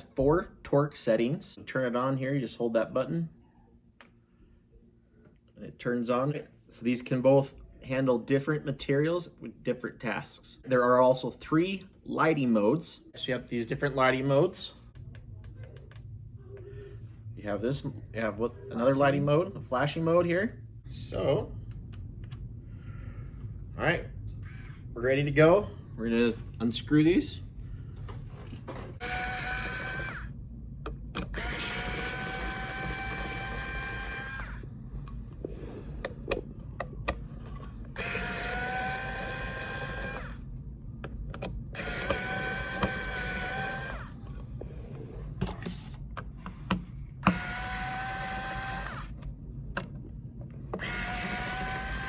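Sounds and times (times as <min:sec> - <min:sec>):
electric screwdriver motor whine: 0:29.0 - 0:30.3, 0:31.2 - 0:34.7, 0:38.0 - 0:40.4, 0:41.7 - 0:44.2, 0:47.2 - 0:49.2, 0:50.8 - 0:52.0.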